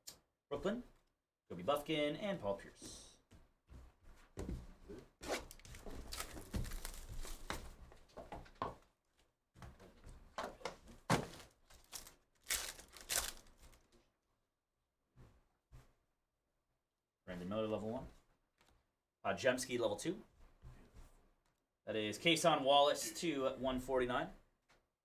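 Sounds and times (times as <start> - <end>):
foil wrappers tearing and crinkling: 5.4 - 7.7, 11.1 - 13.8.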